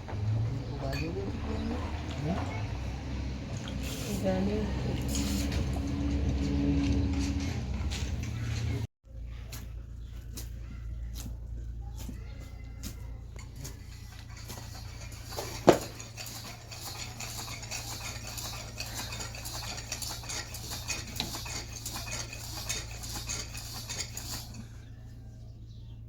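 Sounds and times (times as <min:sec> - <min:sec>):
small hard objects clinking: 0:12.8 - 0:24.8.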